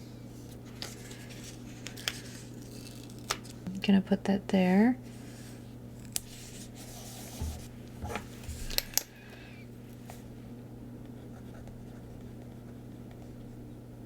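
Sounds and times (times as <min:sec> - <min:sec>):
low electrical hum: 0:00.0 - 0:14.0
paper stationery rustling: 0:06.2 - 0:08.9.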